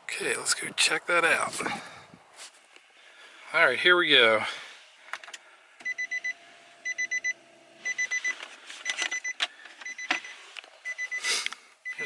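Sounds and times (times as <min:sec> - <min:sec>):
door-open warning chime beeps: 0:05.8 - 0:12.0.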